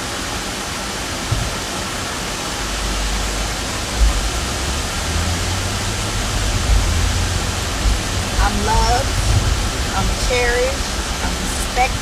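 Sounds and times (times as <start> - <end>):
thump: 1.3 - 1.6
steady rushing noise: 1.3 - 12.0
low rumble: 2.6 - 12.0.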